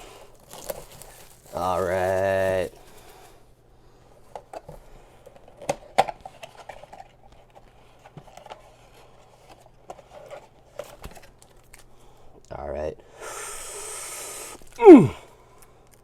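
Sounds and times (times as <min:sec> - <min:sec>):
cardboard and wrapper rustling: 0:00.0 - 0:03.4, 0:05.3 - 0:11.9.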